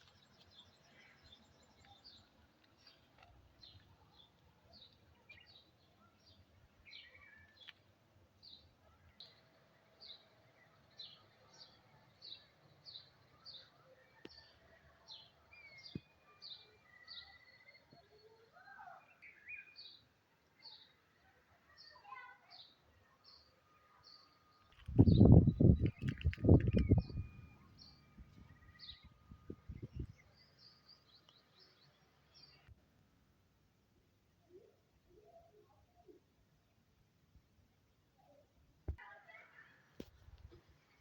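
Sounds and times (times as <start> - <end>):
bird chirping: 8.4 - 21.0, 23.3 - 32.7.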